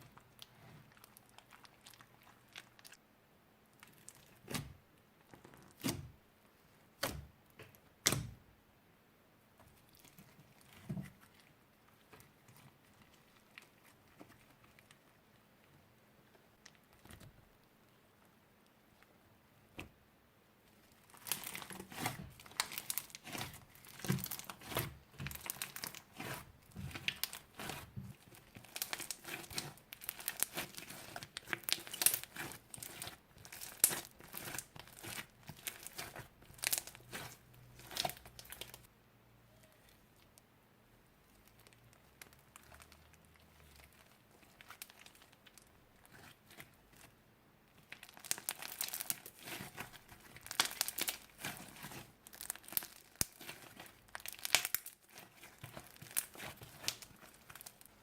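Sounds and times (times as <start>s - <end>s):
plastic crinkling and crackling: 0.0s - 3.0s, 9.6s - 17.7s, 20.7s - 38.9s, 41.2s - 58.0s.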